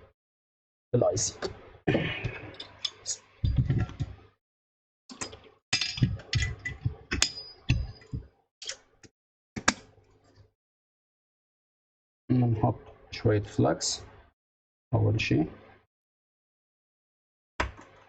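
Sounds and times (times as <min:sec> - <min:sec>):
small tools clicking and tapping: 0:02.3 - 0:04.1, 0:05.1 - 0:08.8.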